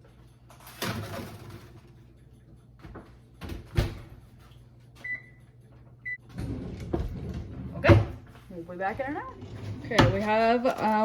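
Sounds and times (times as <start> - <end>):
oven electronic beep: 5.0 - 6.3.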